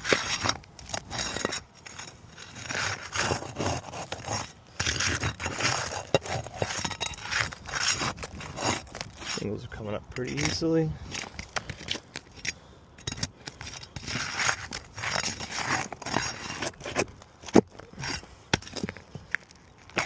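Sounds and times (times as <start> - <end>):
shingles scraping and crackling: 0.0 - 20.0.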